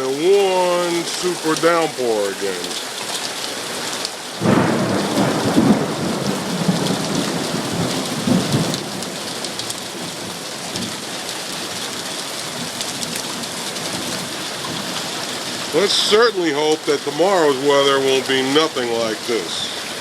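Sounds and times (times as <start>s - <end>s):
heavy rain pouring: 0.0s - 20.0s
rolling thunderclap: 4.4s - 11.0s.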